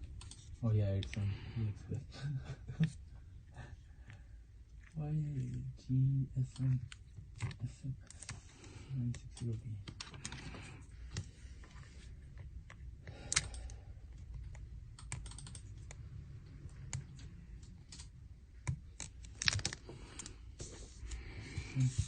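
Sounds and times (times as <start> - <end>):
low steady hum: 0.0 - 22.0
keyboard keystroke clicks: 13.2 - 13.8.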